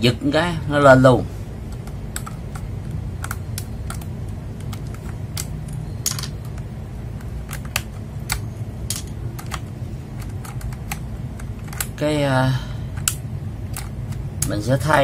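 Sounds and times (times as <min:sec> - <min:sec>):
steady low hum: 0:00.0 - 0:15.0
mechanical keyboard clicks: 0:01.7 - 0:08.5.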